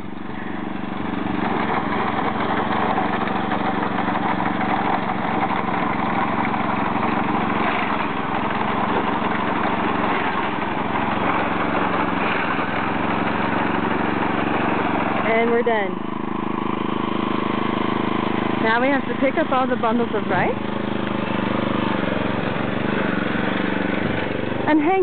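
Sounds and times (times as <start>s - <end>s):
harvester small engine running: 0.0s - 25.0s.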